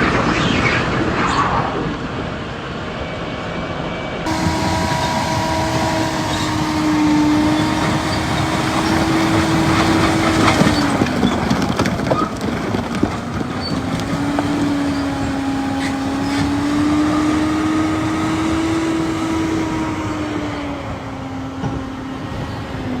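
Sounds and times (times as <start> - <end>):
heavy machinery engine drone: 0.0 - 23.0
clanks and rattles: 7.5 - 15.2.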